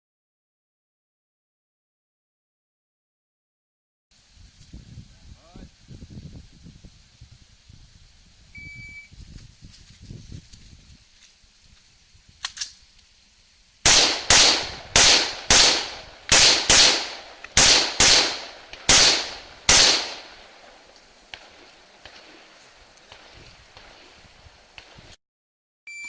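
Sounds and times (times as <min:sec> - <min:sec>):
rifle shots: 0:13.8 - 0:24.2, 0:24.8 - 0:25.1.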